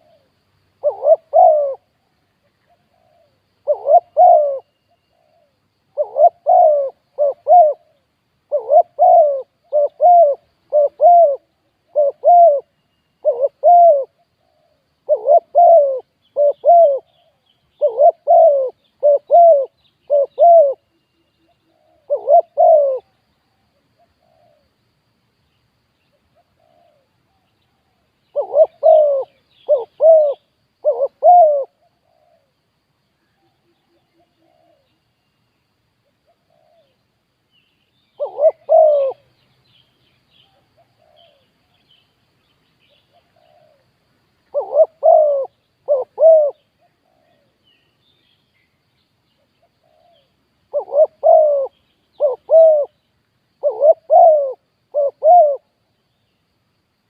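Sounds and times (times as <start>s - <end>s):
dove cooing: 0.0s - 2.0s, 2.6s - 23.2s, 24.0s - 24.6s, 26.4s - 32.6s, 33.3s - 35.0s, 36.2s - 37.0s, 38.2s - 39.3s, 40.5s - 41.5s, 43.0s - 43.9s, 44.5s - 47.6s, 49.6s - 53.0s, 53.6s - 55.8s.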